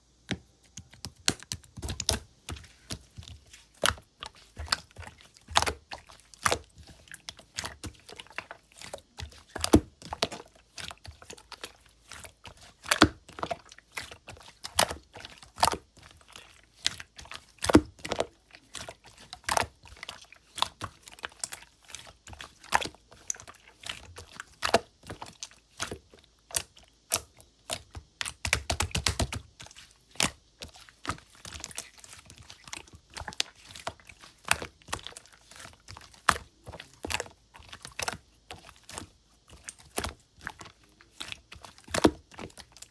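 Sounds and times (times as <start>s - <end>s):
sharp clicks and taps: 0.3s - 2.3s.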